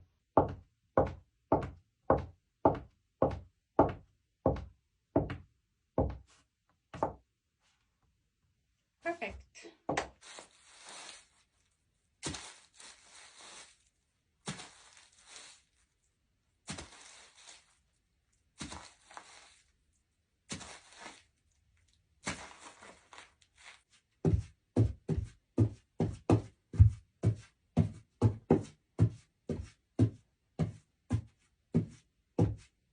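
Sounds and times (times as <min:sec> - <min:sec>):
scuffing rustling strokes: 0:10.0 - 0:11.6, 0:12.2 - 0:15.9, 0:16.7 - 0:17.8, 0:18.6 - 0:19.7, 0:20.5 - 0:21.3, 0:22.2 - 0:32.8.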